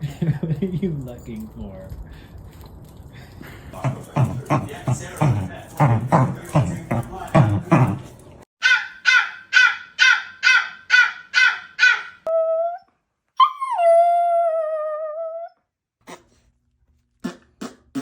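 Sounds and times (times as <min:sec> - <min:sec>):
dog barking: 0:08.6 - 0:12.3
dog yelp: 0:08.6 - 0:12.8
dog howling: 0:13.4 - 0:15.5.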